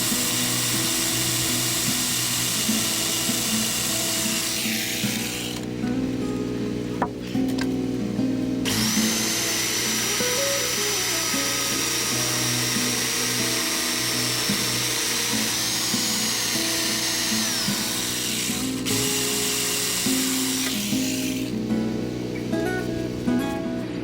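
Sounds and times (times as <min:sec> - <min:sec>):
power tool high whine: 0:00.0 - 0:07.7, 0:08.4 - 0:23.2
background music: 0:00.1 - 0:24.0.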